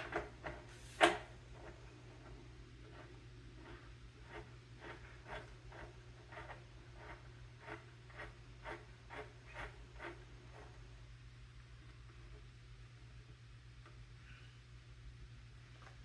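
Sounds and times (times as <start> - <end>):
soft scratching strokes: 0.0 - 11.1
steady low hum: 0.0 - 16.0.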